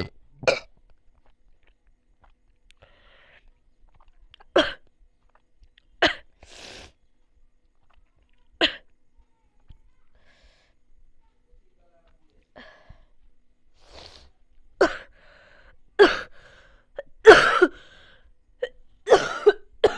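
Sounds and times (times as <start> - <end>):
breaths: 2.7 - 3.5, 10.1 - 10.9, 12.5 - 14.4, 15.1 - 17.0, 17.7 - 18.4.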